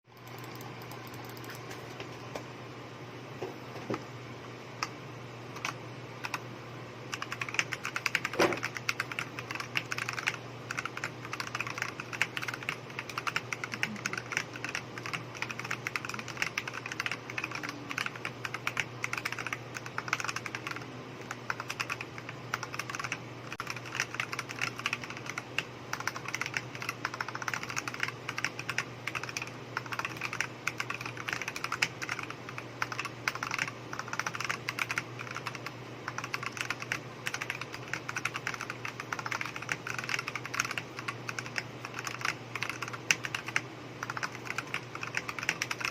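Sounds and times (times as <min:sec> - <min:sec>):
mechanical keyboard typing: 0:00.2 - 0:01.6, 0:05.6 - 0:06.4, 0:07.1 - 0:45.9.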